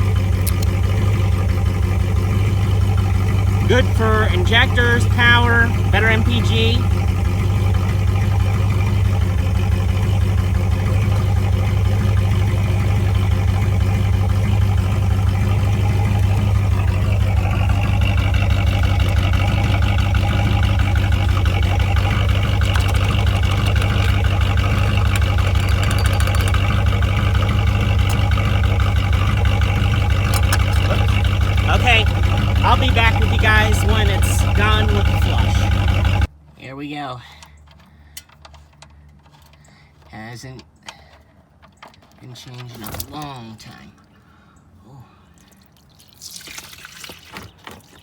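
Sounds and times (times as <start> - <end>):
car engine idling: 0.0 - 36.4.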